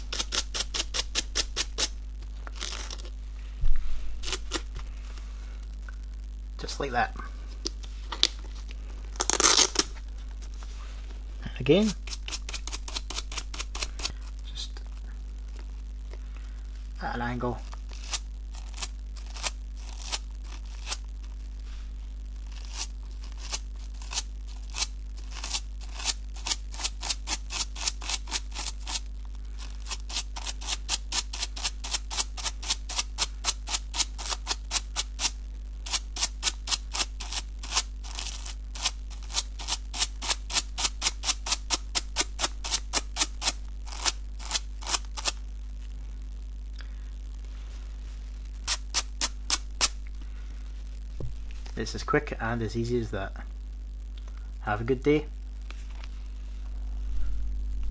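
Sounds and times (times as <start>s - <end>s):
toothbrush scratching velcro: 0.0s - 1.9s, 4.2s - 4.7s, 9.2s - 9.9s, 11.8s - 14.1s, 17.7s - 21.1s, 22.5s - 45.4s, 48.6s - 50.0s
steady low hum: 0.0s - 57.9s.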